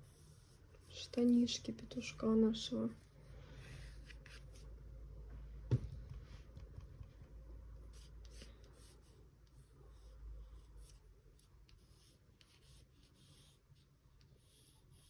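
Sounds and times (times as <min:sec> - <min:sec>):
pencil scratching on paper: 0:00.0 - 0:04.7, 0:07.8 - 0:15.0
sharp tap: 0:05.7 - 0:07.1.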